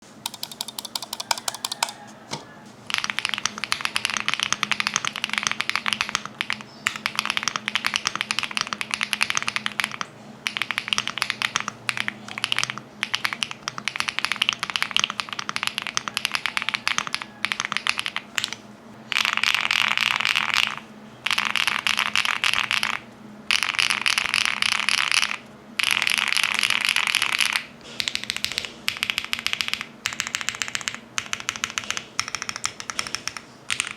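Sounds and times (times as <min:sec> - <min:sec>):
mechanical keyboard key clacks: 0:00.2 - 0:02.1, 0:26.8 - 0:33.9.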